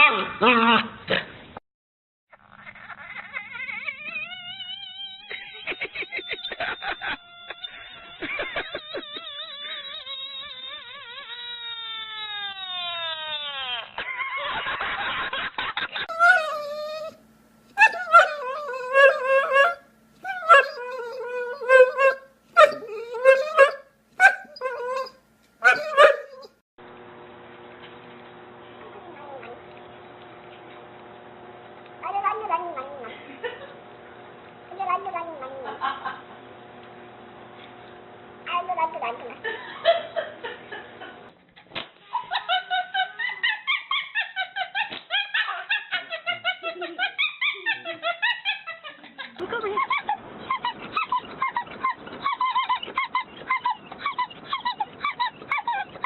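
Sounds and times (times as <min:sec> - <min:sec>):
dog whining: 0:02.7 - 0:06.3, 0:07.2 - 0:14.0, 0:16.1 - 0:17.2, 0:17.8 - 0:26.6, 0:32.0 - 0:33.2, 0:34.7 - 0:35.7, 0:49.7 - 0:56.0
animal giving high-pitched calls: 0:17.8 - 0:26.5.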